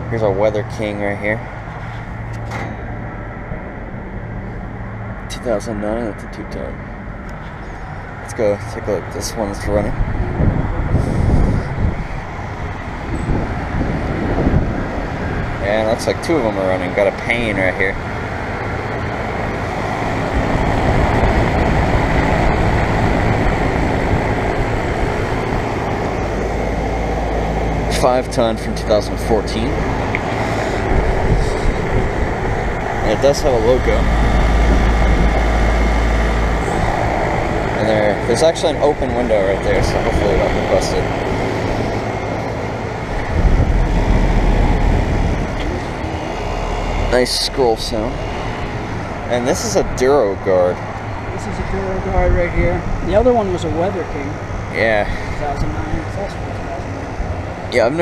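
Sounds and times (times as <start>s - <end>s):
condenser fans rushing air: 0.0s - 58.0s
low compressor hum: 0.0s - 58.0s
deep low rumble: 17.9s - 49.4s.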